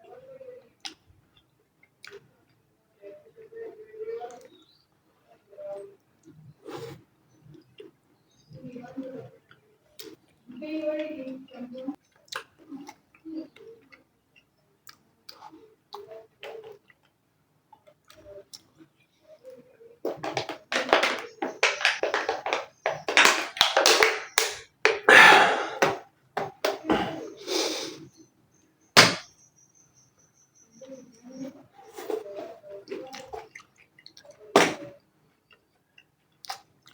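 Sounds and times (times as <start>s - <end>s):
chewing sounds: 9.4s - 10.5s, 12.0s - 18.9s, 31.4s - 36.9s
crackling and rustling bites: 20.0s - 26.9s
mouth clicks: 20.1s - 28.2s.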